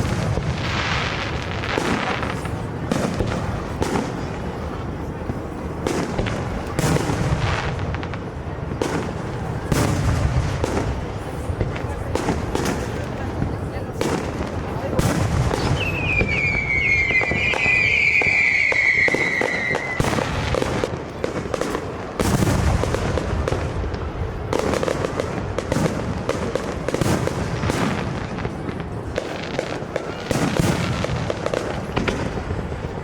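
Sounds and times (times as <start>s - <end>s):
fireworks booming and crackling: 0.0s - 33.0s
firework whistle sliding down: 15.8s - 20.0s.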